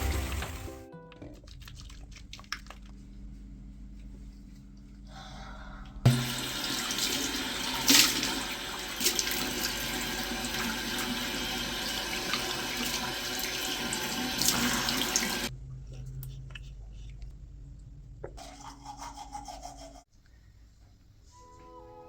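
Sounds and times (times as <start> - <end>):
tap water running into sink: 6.1 - 15.5.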